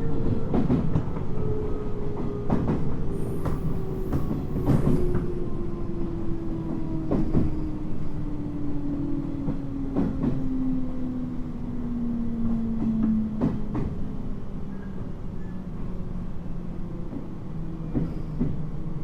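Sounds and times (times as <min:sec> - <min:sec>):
train wheels rumbling: 0:02.0 - 0:08.3.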